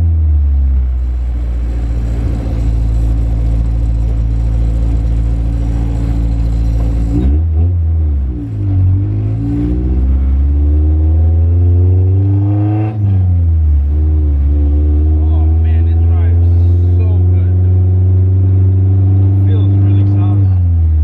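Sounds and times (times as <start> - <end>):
car engine and road noise: 0.0 - 21.0.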